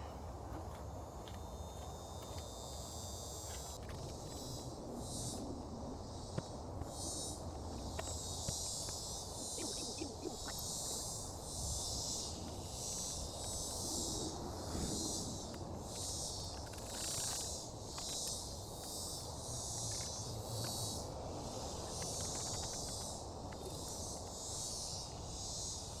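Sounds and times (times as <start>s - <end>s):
insects droning: 0.0s - 26.0s.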